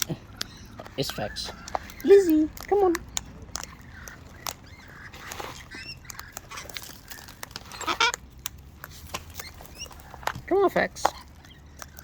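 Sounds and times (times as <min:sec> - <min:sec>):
parrots calling: 0:00.0 - 0:08.4, 0:09.3 - 0:12.0
parrot squawk: 0:03.6 - 0:08.2.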